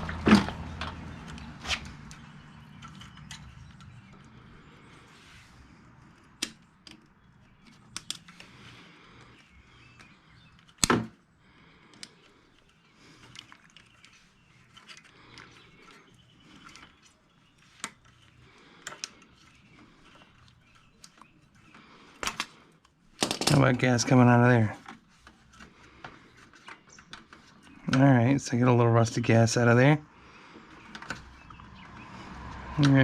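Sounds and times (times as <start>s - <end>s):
tools clicking and knocking on engine: 0.0s - 4.4s.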